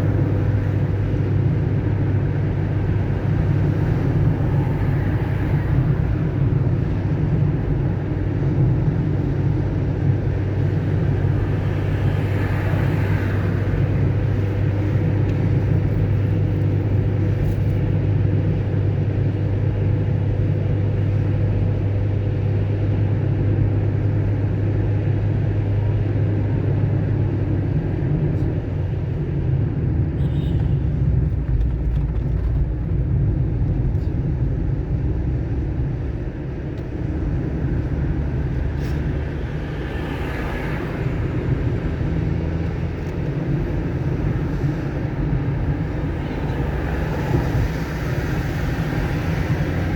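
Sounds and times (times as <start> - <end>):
car engine hum: 0.0 - 49.9
tyre noise on wet road: 23.8 - 49.9.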